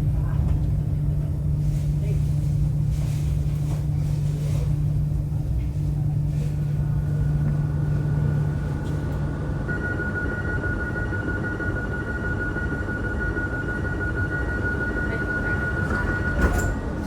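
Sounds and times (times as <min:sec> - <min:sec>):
train rumbling: 0:14.4 - 0:17.0.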